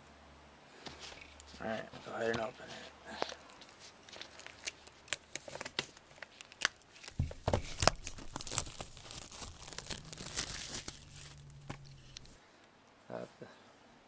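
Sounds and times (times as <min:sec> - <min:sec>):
plastic wrap crinkling: 0:03.1 - 0:12.4.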